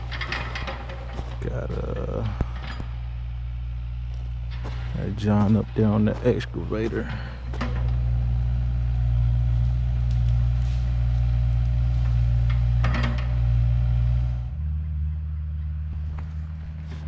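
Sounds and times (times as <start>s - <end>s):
excavator diesel engine droning: 0.0s - 17.0s.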